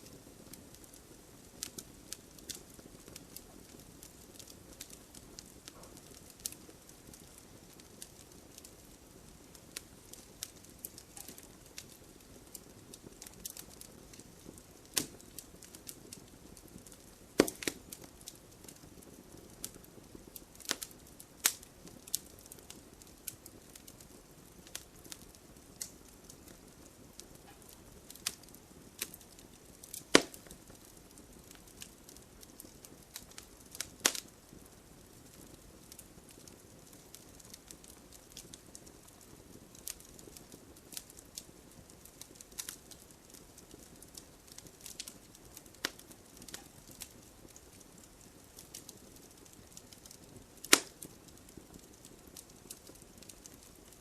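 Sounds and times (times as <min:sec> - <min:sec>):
burning logs crackling and popping: 0:00.0 - 0:54.0
flames hissing: 0:00.0 - 0:54.0.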